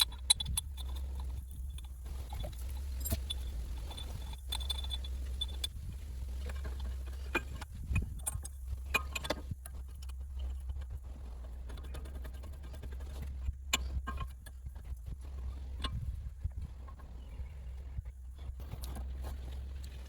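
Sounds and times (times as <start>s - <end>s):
light clicks and knocks: 0.0s - 20.0s.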